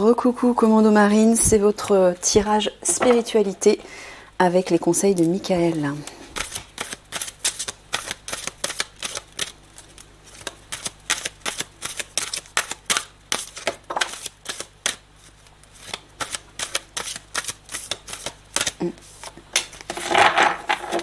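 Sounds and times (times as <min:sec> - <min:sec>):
cards being shuffled: 0:05.1 - 0:21.0.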